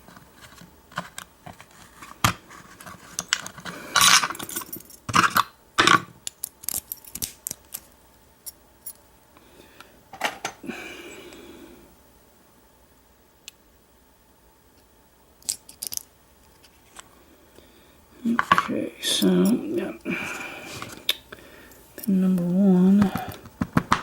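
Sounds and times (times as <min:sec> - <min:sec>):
metal lock parts clicking: 0:06.3 - 0:07.8, 0:15.4 - 0:16.1.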